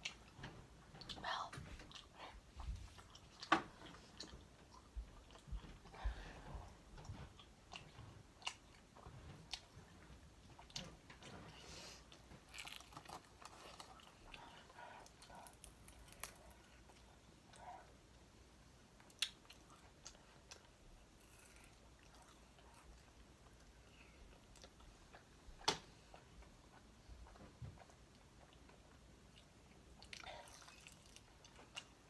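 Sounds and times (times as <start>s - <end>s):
chewing crispy chicken: 12.1s - 17.2s, 26.1s - 32.0s.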